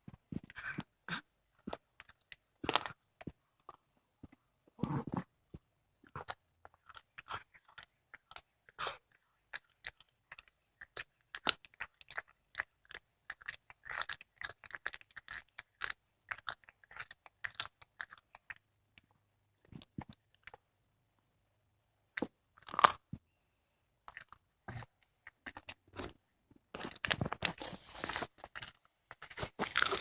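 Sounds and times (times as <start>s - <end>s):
cat chewing bone: 6.0s - 18.6s.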